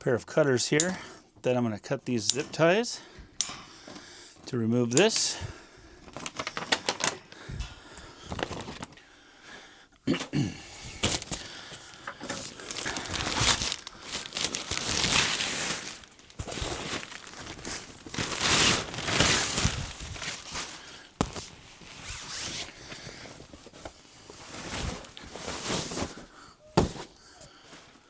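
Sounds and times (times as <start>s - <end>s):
plastic packaging crinkling and tearing: 6.0s - 7.4s, 8.2s - 9.0s, 11.0s - 26.2s.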